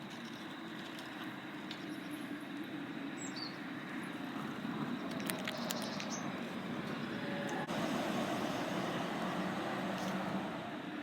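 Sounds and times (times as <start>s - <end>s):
vehicle passing: 6.4s - 11.0s.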